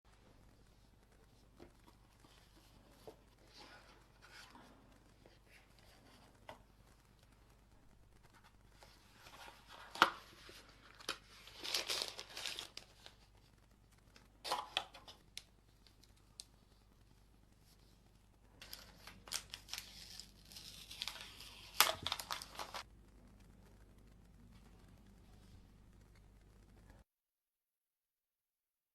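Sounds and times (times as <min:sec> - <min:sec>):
packaging tearing and crinkling: 0:09.2 - 0:13.2, 0:18.6 - 0:22.8.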